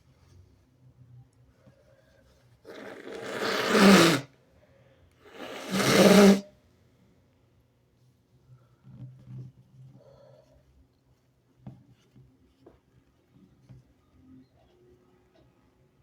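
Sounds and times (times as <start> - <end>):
person sneezing: 2.7 - 4.2, 5.3 - 6.4.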